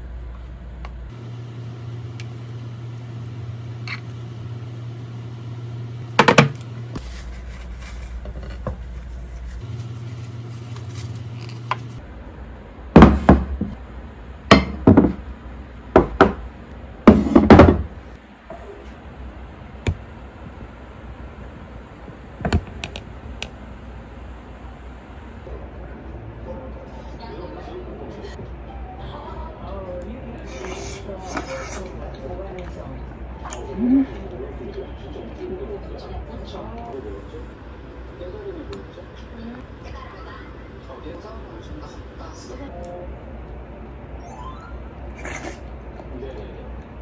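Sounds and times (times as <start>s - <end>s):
microwave oven humming: 0.0s - 29.9s, 32.4s - 45.1s
loud knocks and thuds: 6.2s - 6.6s, 13.0s - 13.8s, 14.5s - 15.2s, 17.1s - 18.0s.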